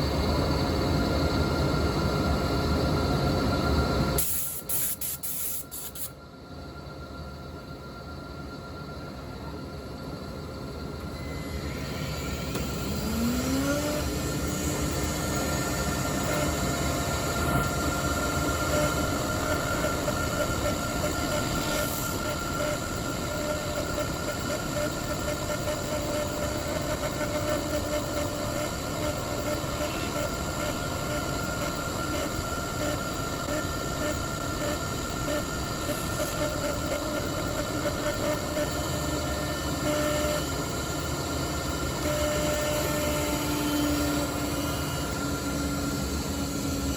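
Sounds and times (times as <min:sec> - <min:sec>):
router spindle high whine: 0:05.8 - 0:46.9.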